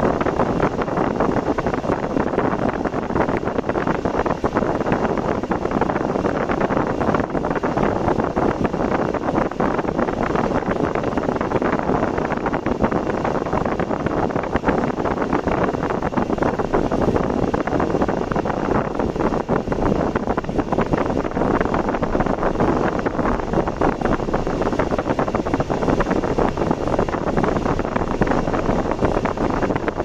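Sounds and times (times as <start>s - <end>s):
wind buffeting microphone: 0.0s - 30.0s
car road noise rushing: 15.8s - 30.0s.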